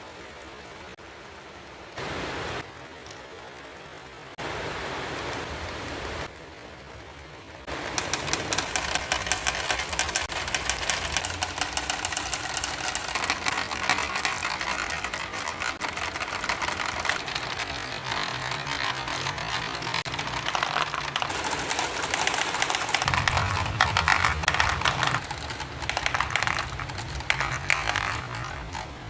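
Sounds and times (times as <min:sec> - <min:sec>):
marbles clattering: 0:07.7 - 0:29.0
marbles rolling down a track: 0:07.7 - 0:29.0.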